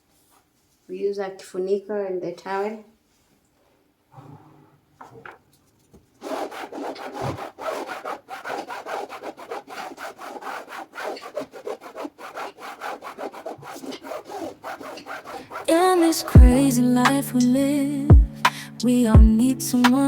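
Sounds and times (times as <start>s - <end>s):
towel scrubbing fabric upholstery: 6.2s - 16.0s.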